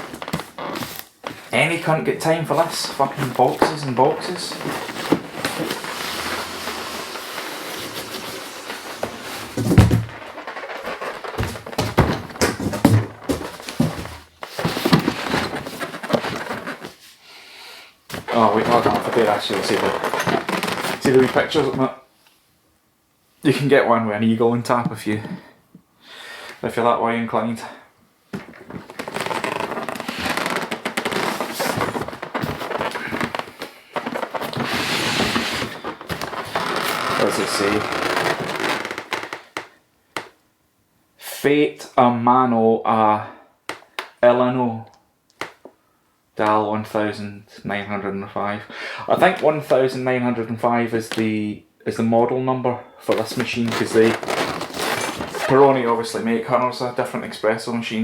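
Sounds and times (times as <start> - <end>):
cardboard rustling and scraping: 0.0 - 17.2, 18.1 - 21.9, 28.4 - 39.5, 53.1 - 56.2
heavy thumps: 2.9 - 16.8.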